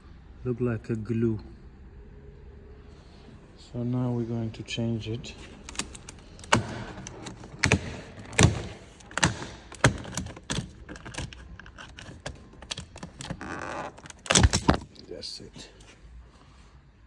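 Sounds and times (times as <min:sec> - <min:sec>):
plastic trim clicking: 0:05.6 - 0:14.9.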